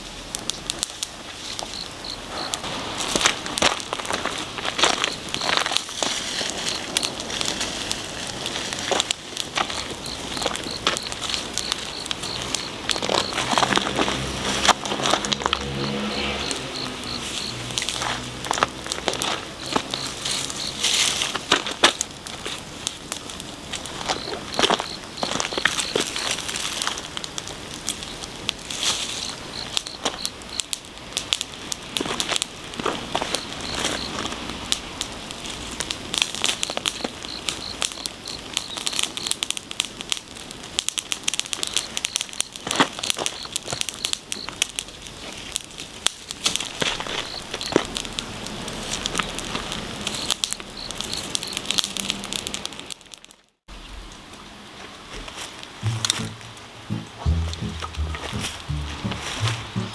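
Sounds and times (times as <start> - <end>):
wood fire crackling: 0.1 - 15.3
bonfire crackling and popping: 0.1 - 53.3, 55.8 - 59.9.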